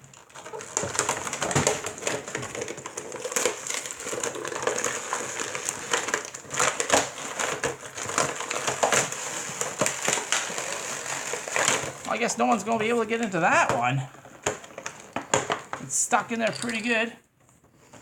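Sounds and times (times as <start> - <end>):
toy packaging crinkling: 0.0 - 17.2
small toy pieces clicking: 16.4 - 17.1.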